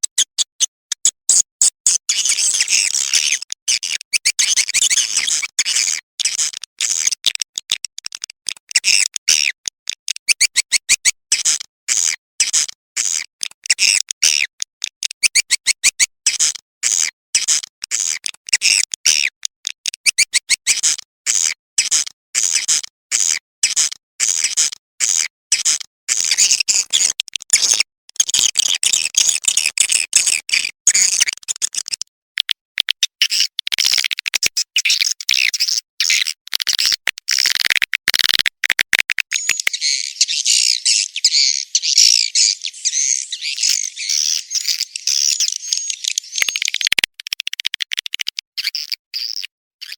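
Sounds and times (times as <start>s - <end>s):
swiftlet twittering chirps and clicks: 0.0s - 11.2s, 13.1s - 16.1s, 26.2s - 49.9s.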